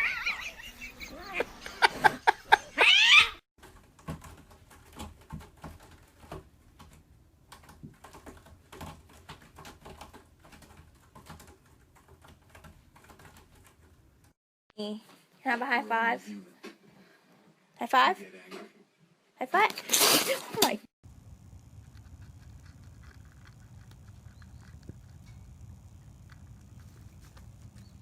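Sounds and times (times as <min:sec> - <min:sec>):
kitten playing with toy on carpet: 0:21.4 - 0:28.0.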